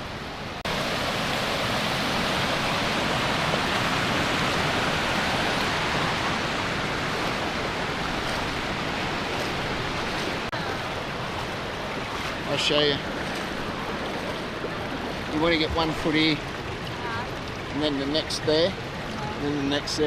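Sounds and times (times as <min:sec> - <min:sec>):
waterfall rushing: 0:00.0 - 0:20.0.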